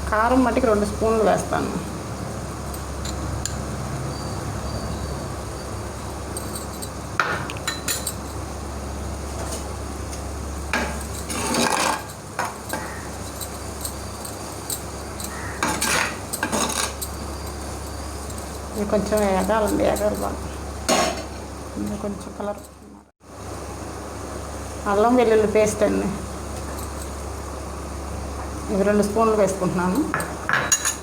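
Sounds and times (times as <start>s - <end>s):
metal spoon scraping clay pot: 11.1s - 12.2s.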